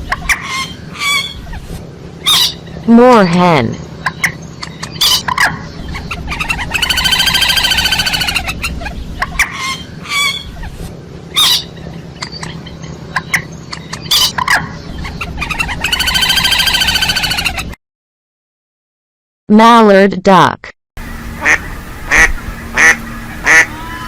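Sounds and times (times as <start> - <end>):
moorhen calling: 2.2 - 10.5, 11.4 - 17.6.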